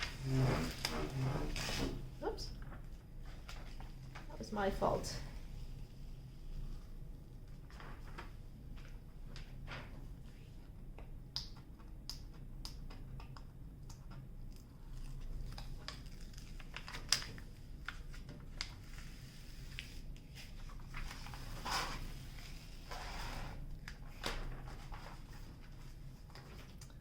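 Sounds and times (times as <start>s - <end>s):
paper rustle: 7.5s - 10.3s, 15.0s - 27.0s.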